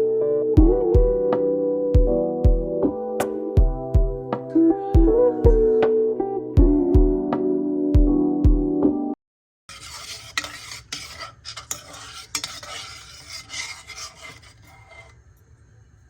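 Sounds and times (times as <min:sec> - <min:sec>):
background music: 0:00.0 - 0:09.2
metal spoon scraping dish: 0:09.7 - 0:15.2.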